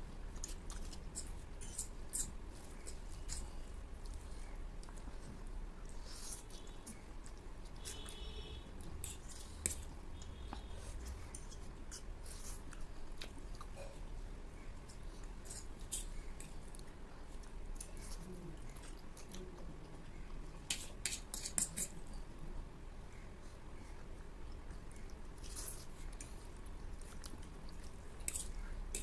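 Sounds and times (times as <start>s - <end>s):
people chewing noodles: 0.0s - 29.0s.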